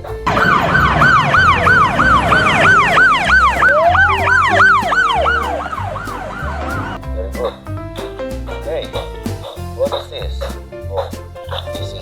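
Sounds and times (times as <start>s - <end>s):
police siren yelp: 0.3s - 6.9s
siren wail: 0.3s - 7.0s.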